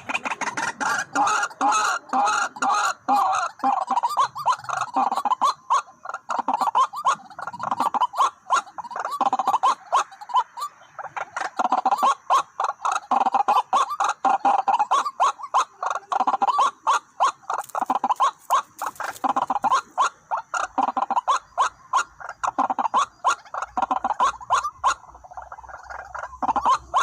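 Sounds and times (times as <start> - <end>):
waterhens calling: 0.0 - 27.0
sharp bird clicks: 17.5 - 19.7.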